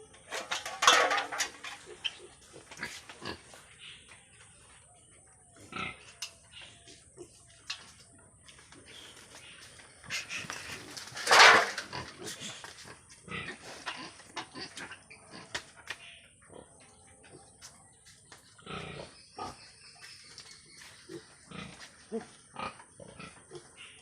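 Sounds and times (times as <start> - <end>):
pigs grunting: 5.6 - 6.3, 10.1 - 15.7, 18.6 - 19.7, 21.1 - 24.0.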